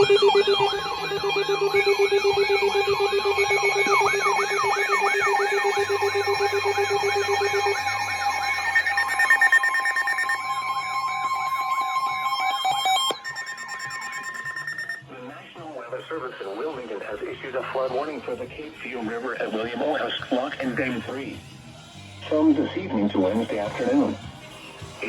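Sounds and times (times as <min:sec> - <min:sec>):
warbling alarm tones: 0:00.0 - 0:15.0.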